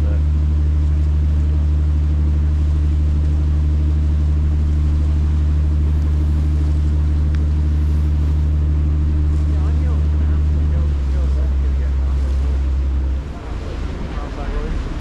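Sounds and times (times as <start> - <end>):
boat engine humming: 0.0 - 15.0.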